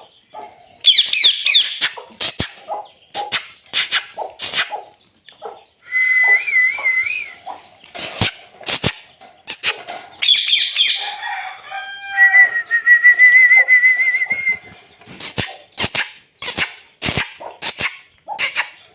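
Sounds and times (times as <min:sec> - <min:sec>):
parrot squawks: 0:00.8 - 0:02.6, 0:08.0 - 0:11.0, 0:15.2 - 0:18.8
parrot chattering: 0:00.8 - 0:04.9, 0:08.0 - 0:11.0, 0:15.2 - 0:18.9
parrot whistling: 0:05.8 - 0:07.4, 0:09.6 - 0:11.0, 0:12.1 - 0:14.7.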